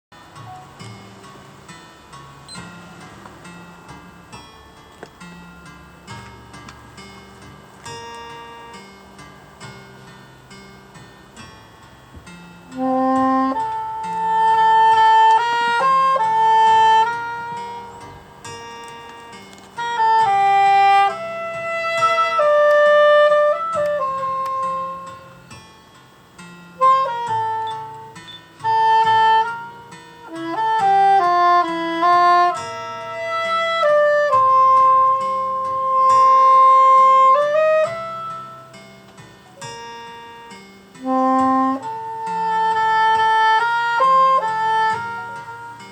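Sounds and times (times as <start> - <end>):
soft low accompaniment: 0.1 - 45.9
saxophone slow melody: 11.4 - 45.9.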